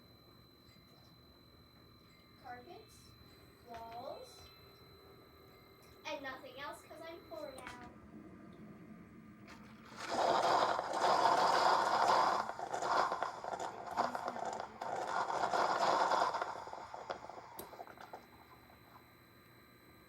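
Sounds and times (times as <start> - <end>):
faint high-pitched tone: 0.0 - 8.0.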